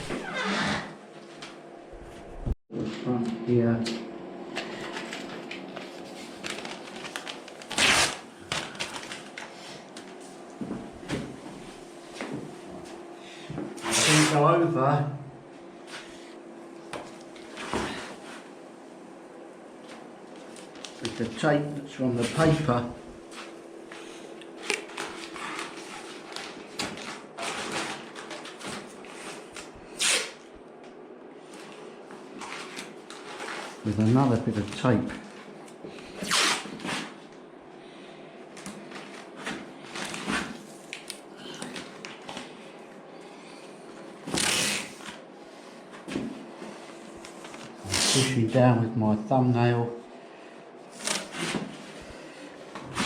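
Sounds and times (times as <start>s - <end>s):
paper crinkling and rustling: 4.8s - 9.5s, 24.6s - 29.7s
tape ripping: 6.5s - 9.2s, 30.0s - 30.4s, 36.2s - 37.0s, 44.3s - 45.1s, 47.8s - 48.3s.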